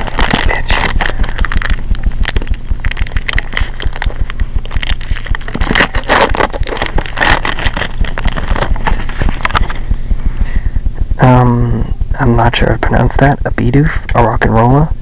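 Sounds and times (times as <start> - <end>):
foil wrapper crinkling and tearing: 0.0 - 9.9
steady low hum: 0.0 - 15.0.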